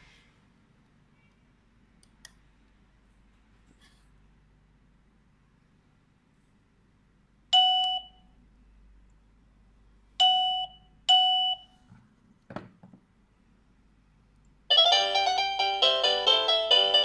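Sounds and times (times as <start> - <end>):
ringtone chime melody: 14.7 - 17.0.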